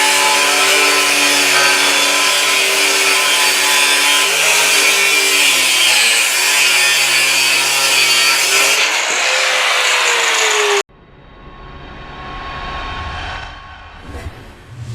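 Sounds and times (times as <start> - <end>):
angle grinder cutting: 0.0 - 10.8
low rumble: 10.9 - 14.9.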